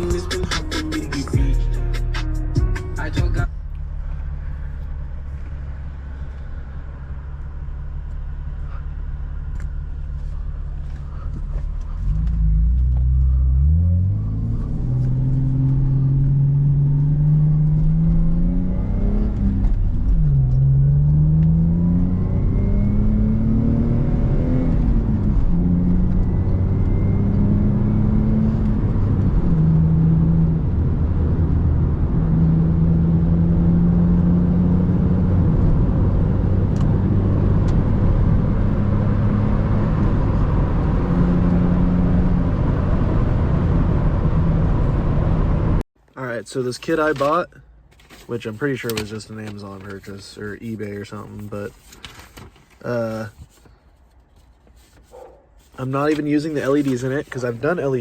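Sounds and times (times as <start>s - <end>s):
car engine revving and accelerating: 2.4s - 45.8s.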